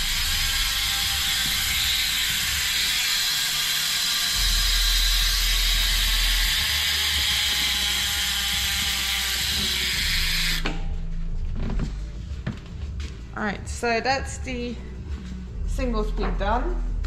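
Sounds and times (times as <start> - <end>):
bicycle freehub ratcheting buzz: 0.0 - 10.9.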